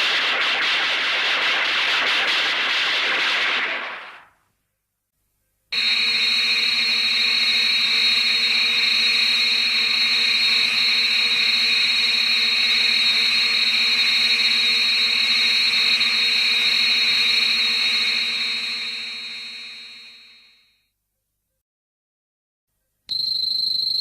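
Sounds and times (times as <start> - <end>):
mechanical electronic drone: 5.8 - 20.5.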